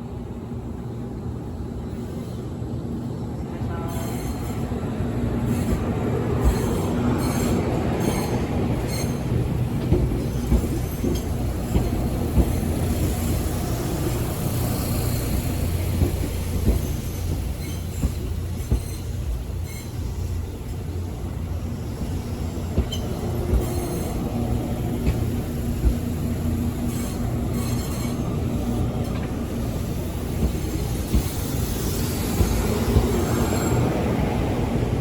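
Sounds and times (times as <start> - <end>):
electric train rumbling past: 0.0 - 35.0
train wheel clicks: 8.1 - 13.3, 15.0 - 19.2, 29.0 - 33.6
hiss: 29.5 - 33.8.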